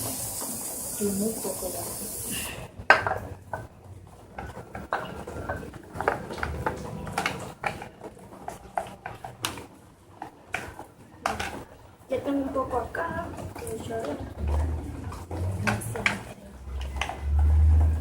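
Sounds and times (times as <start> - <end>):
plastic containers clicking and tapping: 4.3 - 11.7, 13.3 - 18.0.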